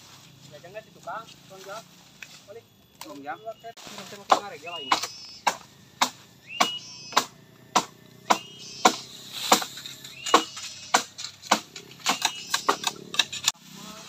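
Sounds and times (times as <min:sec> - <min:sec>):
blade chopping bamboo: 0:04.2 - 0:13.6.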